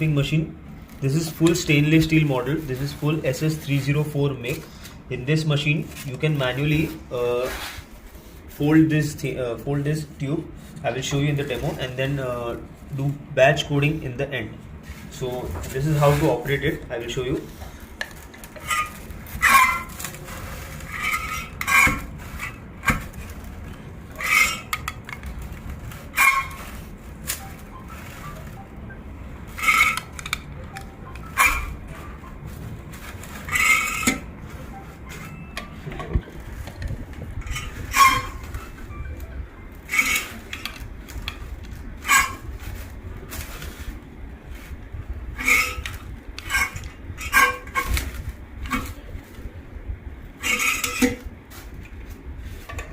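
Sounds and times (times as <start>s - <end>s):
metal crimping machine clanking: 33.2s - 34.3s, 39.9s - 41.4s, 45.4s - 49.0s.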